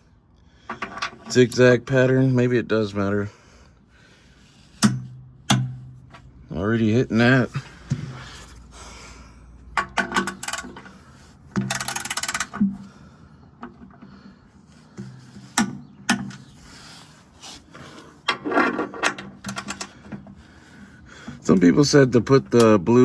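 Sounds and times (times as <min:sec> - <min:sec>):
torque wrench ratchet clicks: 0:11.7 - 0:12.6.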